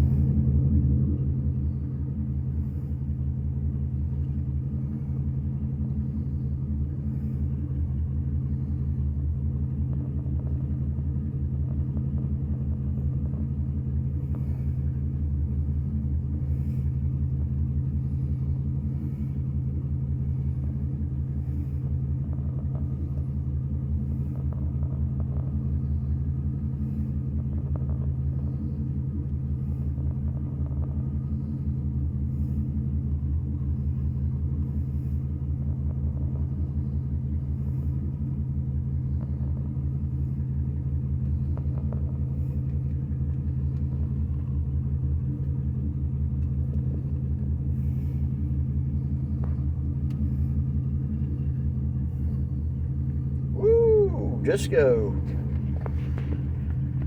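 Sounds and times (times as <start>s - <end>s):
car engine idling: 42.4s - 57.0s.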